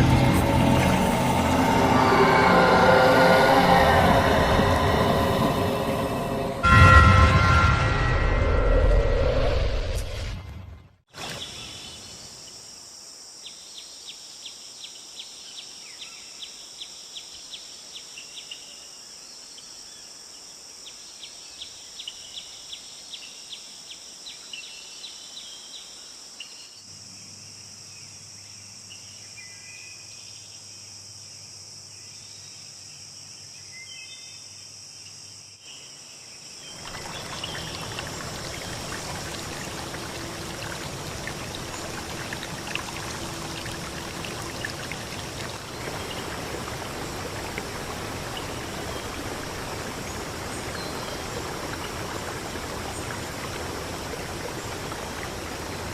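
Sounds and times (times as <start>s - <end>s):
high insect drone: 34.7s - 55.9s
running water rushing: 36.7s - 55.9s.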